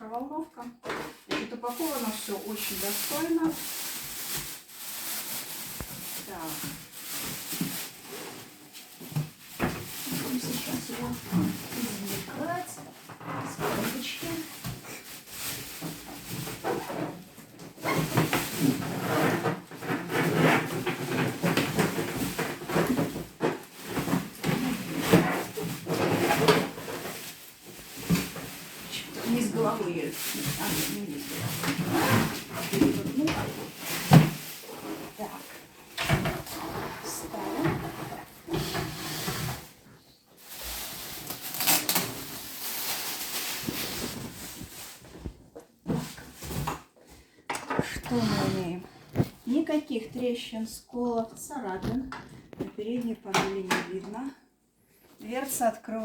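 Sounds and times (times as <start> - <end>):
packaging rustling and knocking: 0.8 - 39.8, 40.4 - 46.9, 47.8 - 49.6
cardboard rubbing and scraping: 17.8 - 39.8, 40.6 - 46.7.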